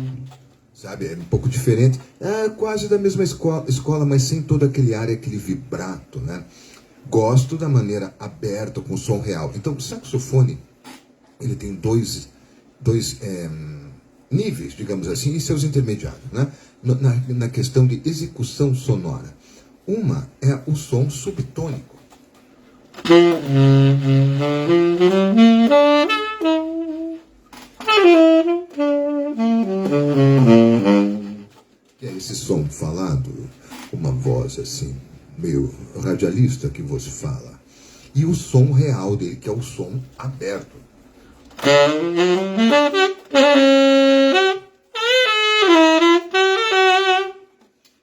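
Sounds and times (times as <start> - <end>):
saxophone playing jazz phrase: 23.0 - 31.6, 41.6 - 47.6.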